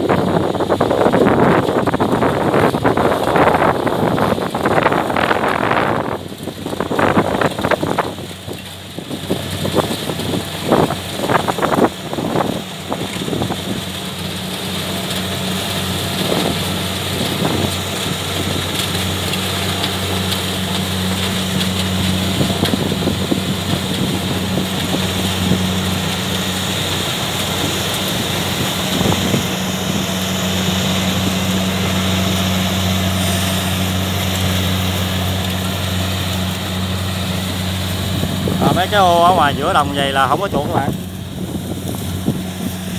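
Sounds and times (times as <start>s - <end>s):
engine humming steadily: 0.0s - 42.9s.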